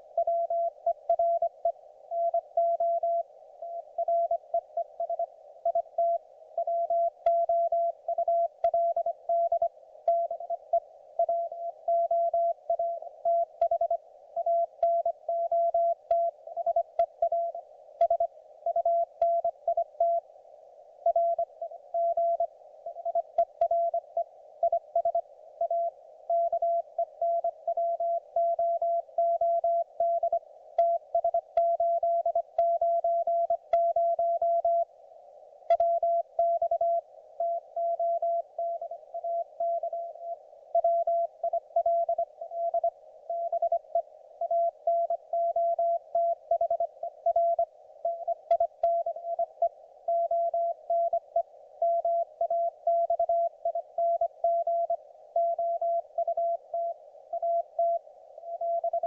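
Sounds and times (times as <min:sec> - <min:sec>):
faint clicks: 0:35.7 - 0:36.5, 0:48.5 - 0:49.0.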